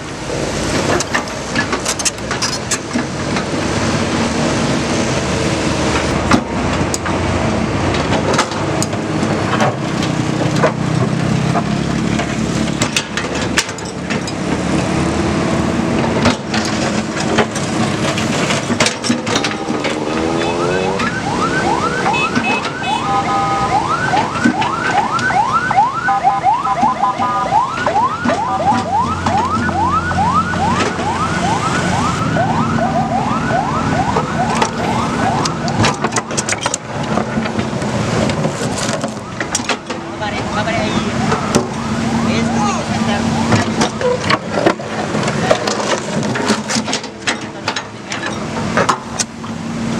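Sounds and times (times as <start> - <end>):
heavy diesel machinery running: 0.0 - 49.9
metal clanks: 16.2 - 21.2
electronic siren yelping: 19.5 - 36.3, 40.6 - 44.2.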